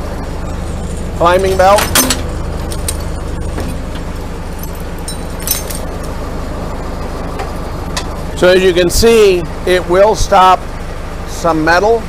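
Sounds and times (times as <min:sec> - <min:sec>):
wood chipper drone: 0:00.0 - 0:12.0
metallic clicks and clatter: 0:01.5 - 0:06.2.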